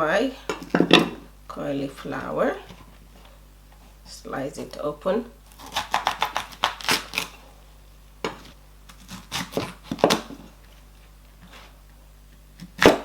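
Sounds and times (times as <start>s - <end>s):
knife cutting cauliflower: 5.5s - 7.4s, 8.9s - 10.4s.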